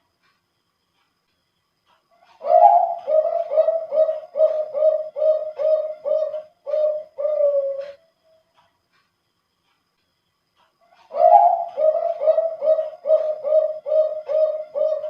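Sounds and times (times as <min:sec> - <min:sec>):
dove cooing: 0:02.3 - 0:08.1, 0:11.0 - 0:15.0.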